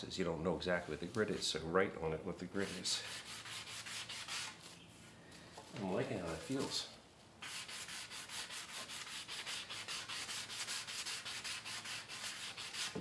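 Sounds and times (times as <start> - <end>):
sandpaper rubbing on wood: 2.6 - 4.7, 5.8 - 13.0.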